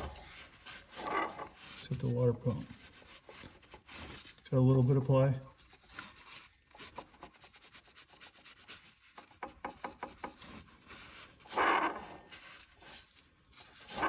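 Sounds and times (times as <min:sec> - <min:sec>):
pulley rubbing rasp: 0:00.0 - 0:04.5, 0:05.6 - 0:14.0.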